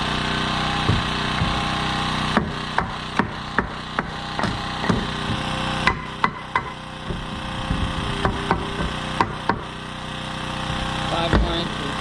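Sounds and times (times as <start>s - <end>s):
low mechanical hum: 0.0s - 12.0s
hammer striking wood: 0.8s - 9.8s, 11.3s - 11.6s.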